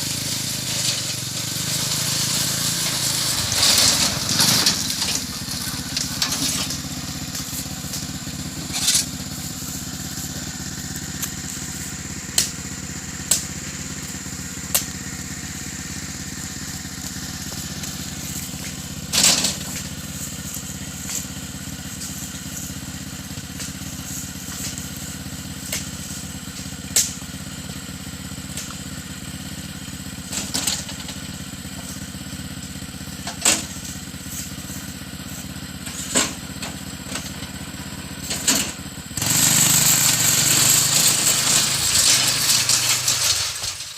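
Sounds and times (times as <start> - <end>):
small motor engine running: 0.0 - 43.9.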